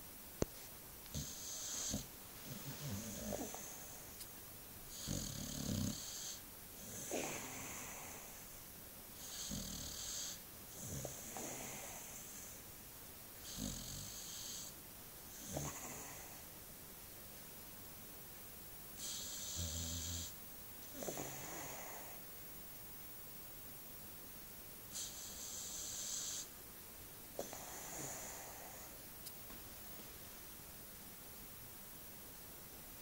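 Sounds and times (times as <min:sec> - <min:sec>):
dog snoring: 0:01.1 - 0:04.2, 0:04.9 - 0:08.5, 0:09.2 - 0:12.6, 0:13.4 - 0:16.4, 0:19.0 - 0:22.2, 0:24.9 - 0:26.5, 0:27.4 - 0:29.0.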